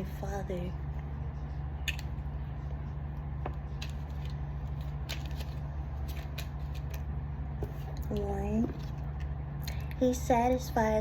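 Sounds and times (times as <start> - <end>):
steady low hum: 0.0 - 11.0
paper cards clicking and rustling: 3.7 - 7.1.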